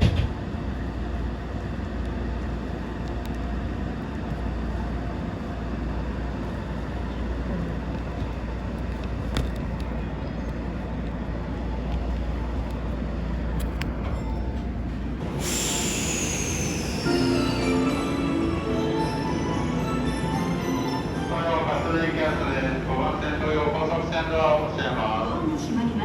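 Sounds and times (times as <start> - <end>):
electric train rumble and hum: 0.0 - 26.0.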